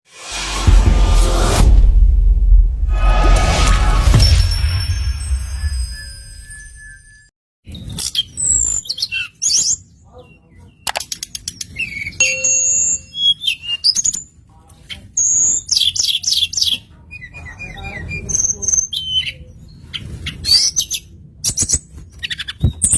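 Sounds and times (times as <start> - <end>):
bird singing whistles and trills: 6.4 - 10.8, 11.6 - 14.2.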